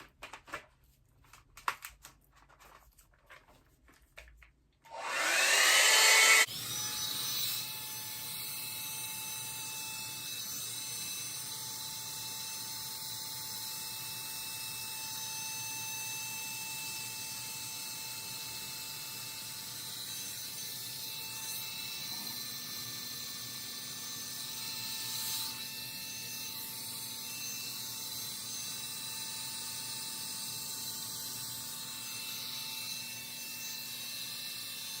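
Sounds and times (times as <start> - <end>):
hot-air brush dryer running: 4.9 - 6.7.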